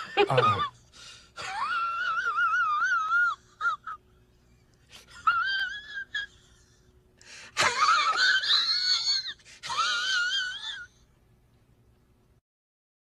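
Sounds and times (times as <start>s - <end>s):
high-pitched wavering wailing cries: 1.4s - 4.0s, 5.2s - 6.7s, 7.6s - 11.0s.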